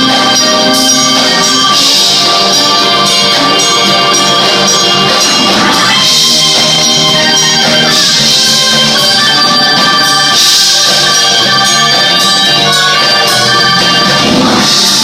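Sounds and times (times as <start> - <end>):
drums: 0.0 - 15.0
live rock band playing: 0.0 - 15.0.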